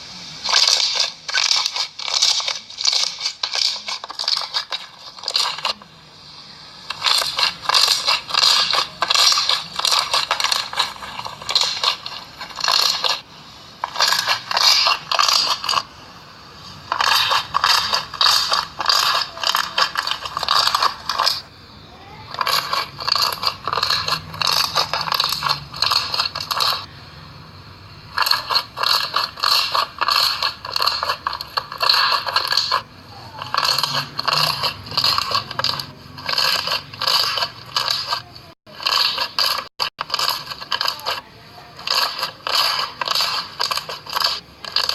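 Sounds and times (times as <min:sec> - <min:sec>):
slime squeezed crackling: 0:16.9 - 0:26.9.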